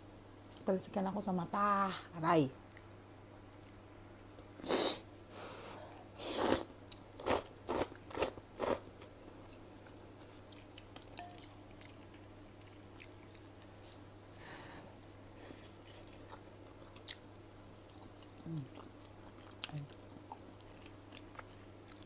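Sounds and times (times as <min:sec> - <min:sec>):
slurping and chewing noodles: 0:06.2 - 0:11.2.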